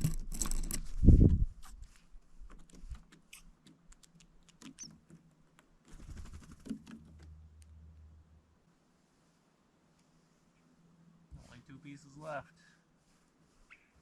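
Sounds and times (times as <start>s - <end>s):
birds pecking taps and clicks: 2.5s - 7.7s.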